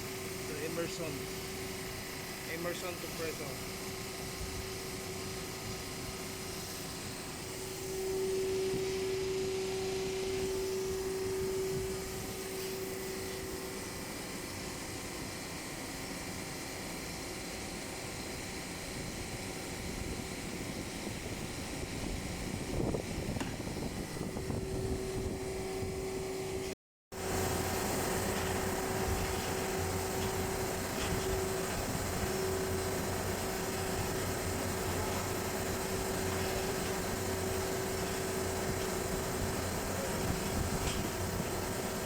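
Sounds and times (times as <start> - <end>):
machine whirring: 27.2 - 42.0.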